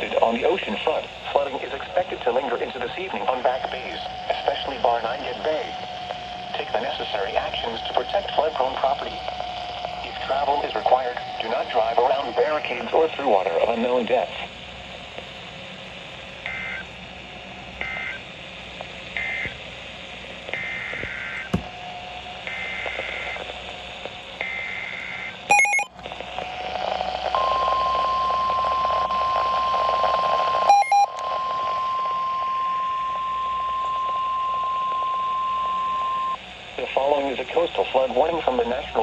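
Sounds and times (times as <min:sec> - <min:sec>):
radio hiss: 0:00.0 - 0:39.0
short electronic beeps: 0:25.5 - 0:25.9, 0:30.7 - 0:31.1
steady alarm tone: 0:25.5 - 0:25.9, 0:30.7 - 0:31.1.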